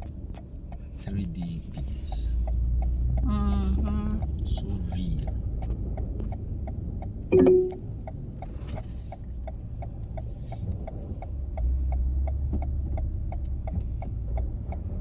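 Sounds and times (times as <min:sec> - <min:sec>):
turn signal ticking: 0:00.0 - 0:15.0
loud beep: 0:07.3 - 0:07.8.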